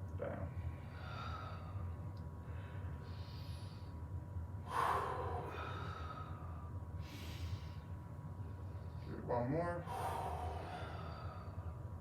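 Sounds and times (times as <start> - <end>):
steady low hum: 0.0 - 12.0
person breathing: 0.7 - 4.0, 4.7 - 8.0, 9.8 - 11.9.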